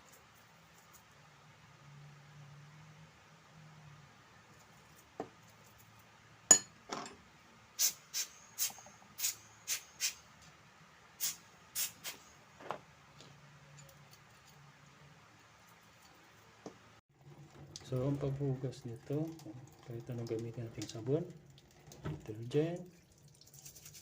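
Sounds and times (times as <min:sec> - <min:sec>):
brush scratching plastic: 0:23.6 - 0:24.0.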